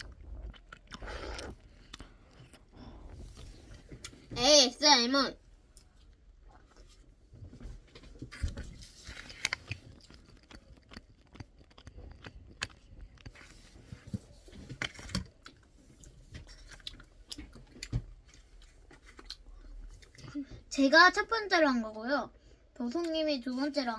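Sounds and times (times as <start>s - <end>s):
chewing crunches: 0.0s - 4.2s, 8.2s - 20.3s.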